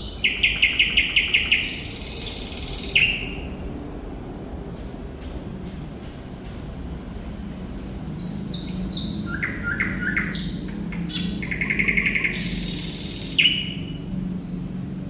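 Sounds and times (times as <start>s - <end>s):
bird singing: 0.0s - 3.6s, 8.1s - 15.0s
steady low hum: 0.0s - 15.0s.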